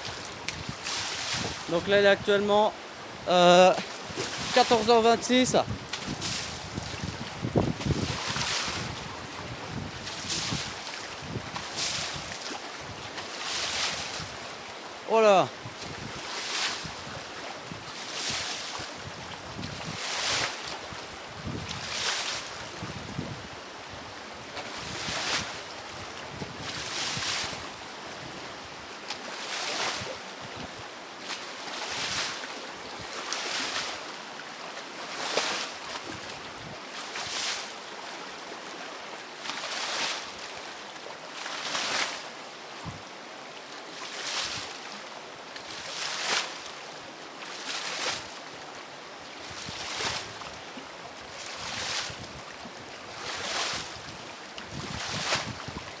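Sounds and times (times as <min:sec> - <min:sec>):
water rushing: 0:00.0 - 0:09.4, 0:10.0 - 0:17.4
waves splashing: 0:00.0 - 0:20.9, 0:29.0 - 0:30.2, 0:31.2 - 0:43.0, 0:43.6 - 0:48.6, 0:49.4 - 0:56.0.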